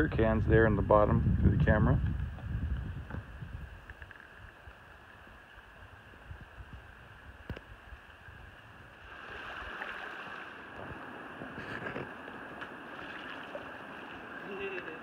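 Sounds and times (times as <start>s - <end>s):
river water over rocks: 3.8s - 15.0s.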